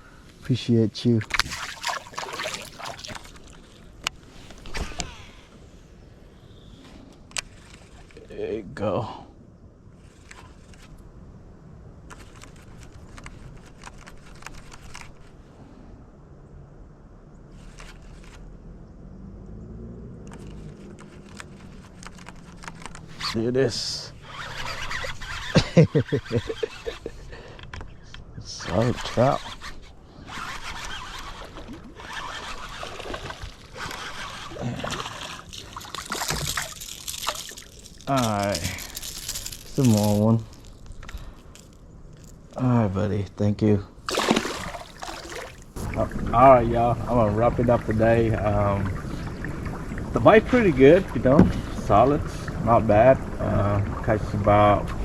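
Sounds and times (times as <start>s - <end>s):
water splashing and trickling: 1.0s - 5.3s, 28.6s - 42.9s, 44.0s - 55.0s
knocks and scrapes in boat: 1.1s - 5.5s, 10.0s - 11.0s, 12.1s - 15.6s, 20.3s - 42.6s, 47.0s - 52.1s
steady low rumble: 45.7s - 55.0s.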